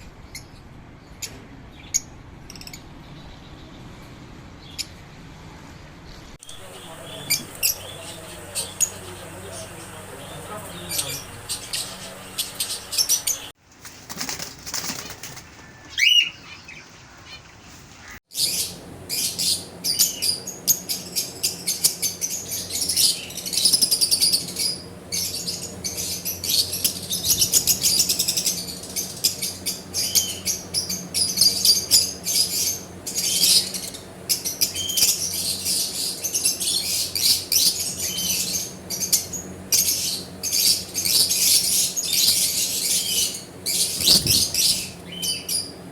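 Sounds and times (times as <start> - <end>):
parrots chattering and squawking: 14.8 - 45.9.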